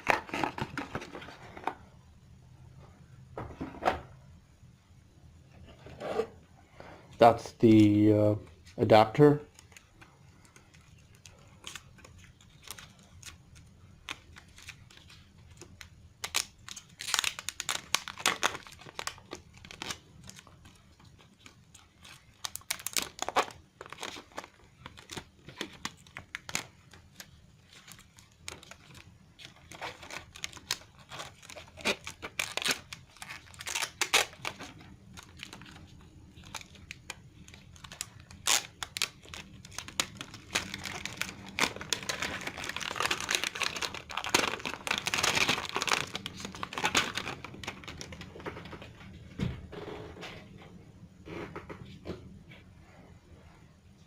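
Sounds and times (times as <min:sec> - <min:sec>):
plastic packaging crinkling: 0:00.0 - 0:01.7, 0:08.8 - 0:48.8.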